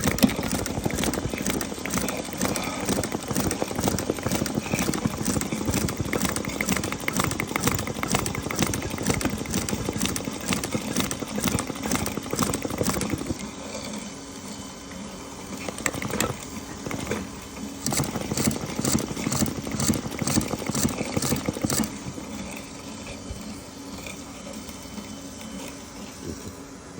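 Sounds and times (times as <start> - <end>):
sewing needle clicking rapidly: 0.0 - 13.4, 15.6 - 22.6
sewing machine humming: 0.0 - 26.3.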